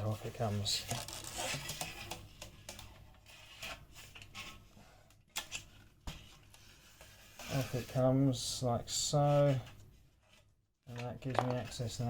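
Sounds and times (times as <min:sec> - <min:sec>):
faint rustling of tape: 0:00.0 - 0:12.0
rim tape pulled off clicking: 0:00.9 - 0:02.9.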